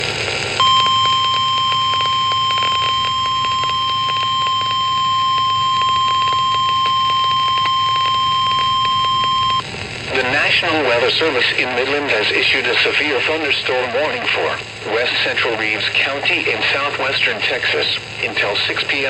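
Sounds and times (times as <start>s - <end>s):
faint radio static crackle: 0.0s - 19.0s
steady alarm tone: 0.6s - 9.6s.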